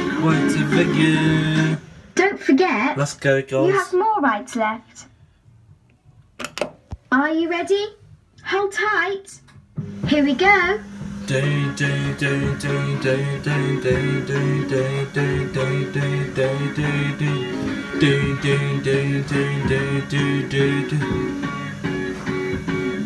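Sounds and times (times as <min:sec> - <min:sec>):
plucked guitar music over bass beat: 0:11.3 - 0:23.0.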